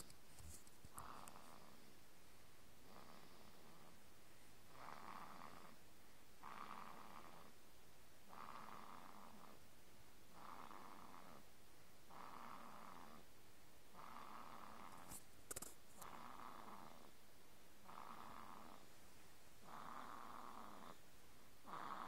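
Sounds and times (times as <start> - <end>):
quiet breaths: 0.0 - 22.0
rasping snores: 0.9 - 1.9, 2.8 - 4.0, 4.7 - 5.8, 6.4 - 7.6, 8.3 - 9.6, 10.3 - 11.5, 12.1 - 13.3, 13.9 - 15.2, 16.0 - 17.1, 17.8 - 18.9, 19.6 - 21.0, 21.6 - 22.0.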